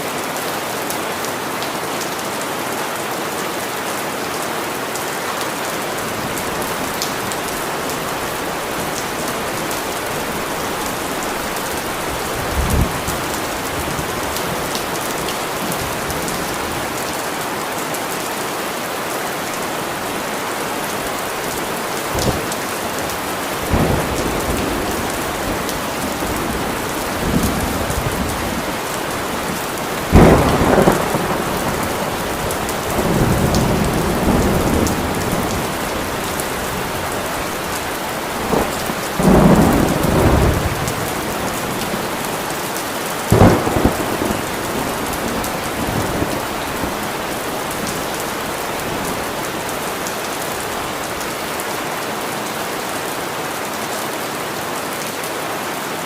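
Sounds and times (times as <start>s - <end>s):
steady rain falling: 0.0s - 56.0s
low rolling thunder rumbles: 23.2s - 42.4s, 43.3s - 49.3s
thunder clap: 29.5s - 35.8s, 38.5s - 41.9s, 43.3s - 47.0s.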